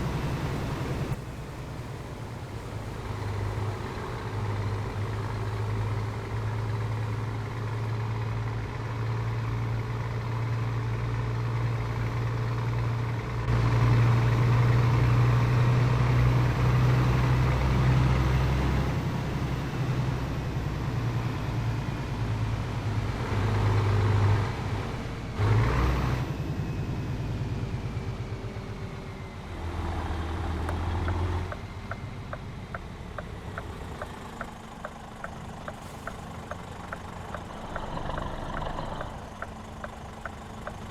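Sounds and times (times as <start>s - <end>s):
engine idling: 0.0s - 14.4s, 30.1s - 40.9s
diesel truck engine rumble: 0.0s - 40.9s
light regular ticking: 30.6s - 40.9s.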